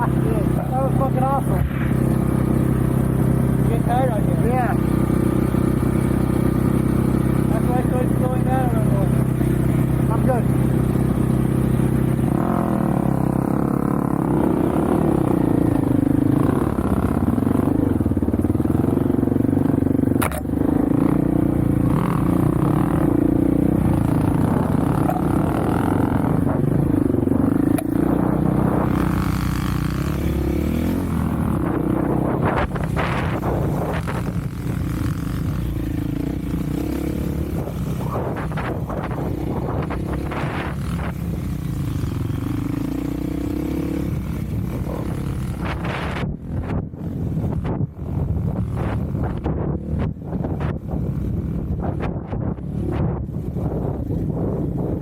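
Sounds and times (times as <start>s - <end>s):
off-road vehicle engine revving: 0.0s - 55.0s.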